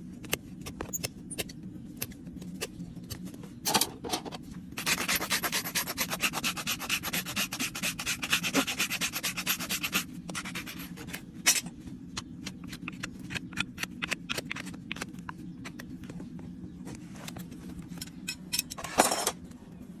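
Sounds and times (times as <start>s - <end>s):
low steady hum: 0.0s - 20.0s
rasp filing a hoof: 4.8s - 11.1s.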